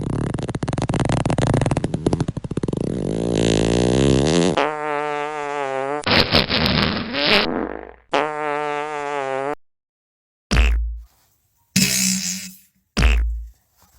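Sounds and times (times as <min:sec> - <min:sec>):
crackling fart sputter: 0:00.0 - 0:09.6, 0:11.8 - 0:13.5
buzzing fart sounds: 0:02.6 - 0:09.6, 0:10.5 - 0:11.1, 0:11.8 - 0:13.5.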